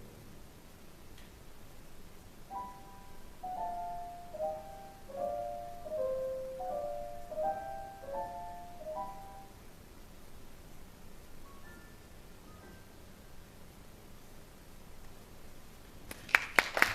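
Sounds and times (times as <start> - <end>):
solo piano playing soft notes: 2.5 - 9.6.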